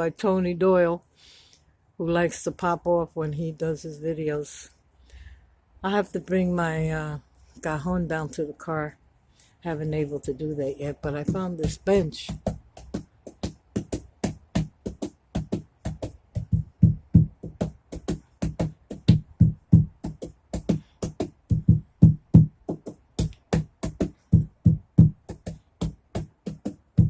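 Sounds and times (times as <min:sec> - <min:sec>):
hand drumming on a bench: 0:11.2 - 0:27.0.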